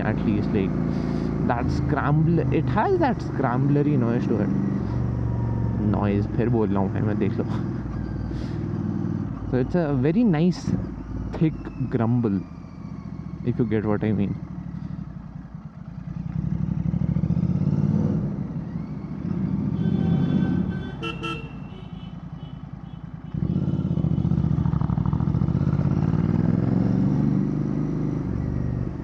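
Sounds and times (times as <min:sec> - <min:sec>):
motorcycle engine grumble: 0:00.0 - 0:29.0
vehicle horn toot: 0:19.7 - 0:24.5.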